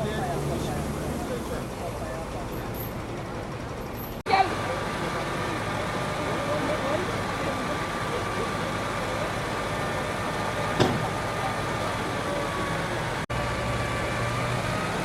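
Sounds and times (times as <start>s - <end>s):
heavy engine running: 0.0s - 15.0s
sharp knock: 10.8s - 11.1s.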